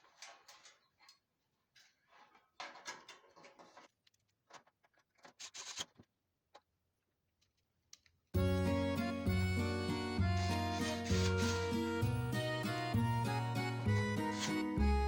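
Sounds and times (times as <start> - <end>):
plastic parts clicking and knocking: 0.0 - 6.7
hands rustling: 8.4 - 15.0.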